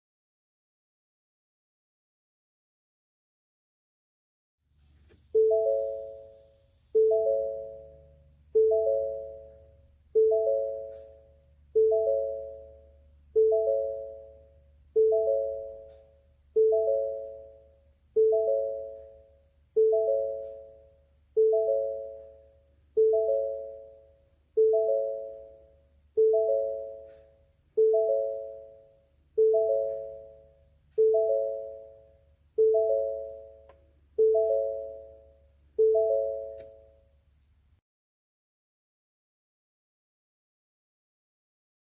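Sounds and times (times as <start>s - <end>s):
car door warning chime: 5.3s - 6.4s, 19.8s - 20.8s, 21.4s - 22.4s, 23.0s - 24.0s, 29.4s - 32.0s, 32.6s - 36.9s.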